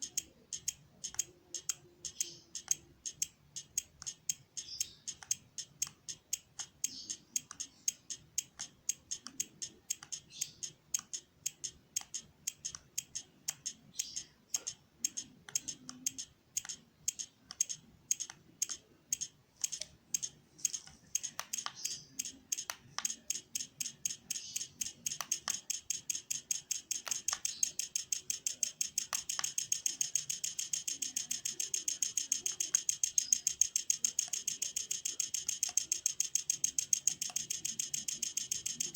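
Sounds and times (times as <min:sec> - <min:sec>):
welding machine ticking: 0:00.0 - 0:38.9.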